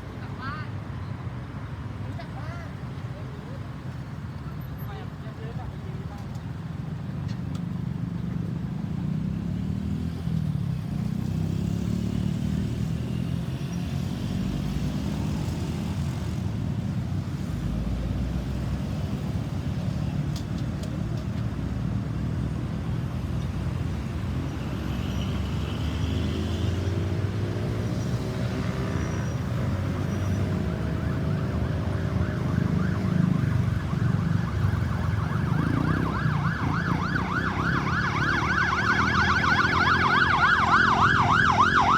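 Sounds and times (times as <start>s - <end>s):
vehicle engine and traffic rumble: 0.0s - 41.9s
emergency siren wailing and yelping: 28.6s - 41.9s.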